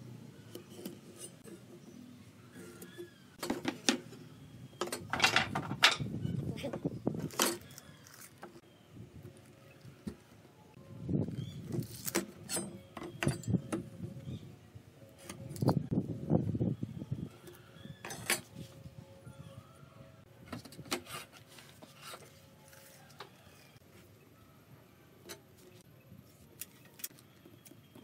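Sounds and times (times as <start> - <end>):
wooden pieces and tools clattering: 4.8 - 6.1.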